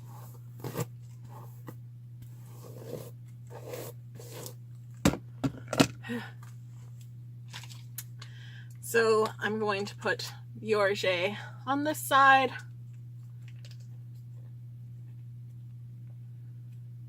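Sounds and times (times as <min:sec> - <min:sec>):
comb scraping through hair: 0:00.0 - 0:04.6
low steady hum: 0:00.0 - 0:17.0.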